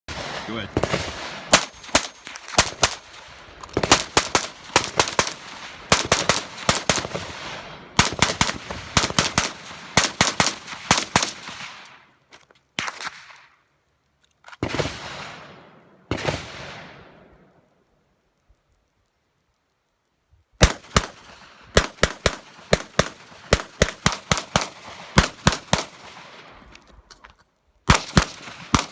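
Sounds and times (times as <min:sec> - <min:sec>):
gunshots with echo: 0:00.1 - 0:11.8, 0:27.9 - 0:28.9.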